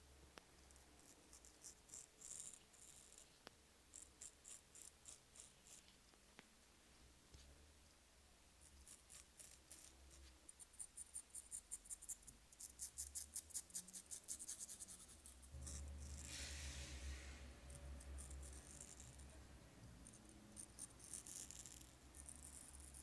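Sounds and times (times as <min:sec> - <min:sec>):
soft steady hiss: 0:00.0 - 0:23.0
razor scraping stubble: 0:12.6 - 0:23.0.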